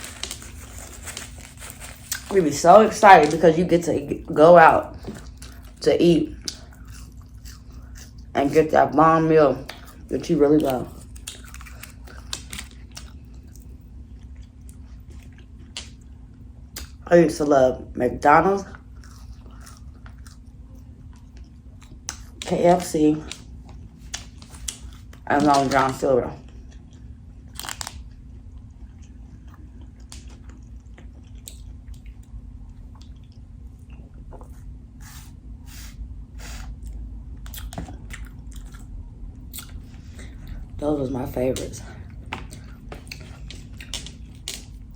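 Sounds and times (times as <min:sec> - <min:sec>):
steady low hum: 0:00.0 - 0:44.9
close chewing with wet clicks: 0:05.0 - 0:05.8, 0:06.4 - 0:08.3, 0:09.6 - 0:17.0, 0:18.7 - 0:22.5, 0:26.4 - 0:34.6, 0:36.8 - 0:40.7, 0:41.6 - 0:44.9.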